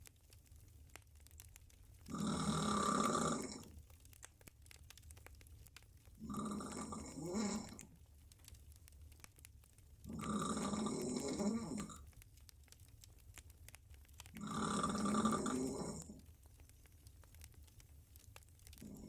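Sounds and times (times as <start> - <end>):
quiet breathing: 1.6 - 4.2, 6.1 - 12.2, 14.2 - 19.0
woman snoring: 2.1 - 3.6, 6.2 - 7.8, 10.1 - 12.0, 14.4 - 16.2.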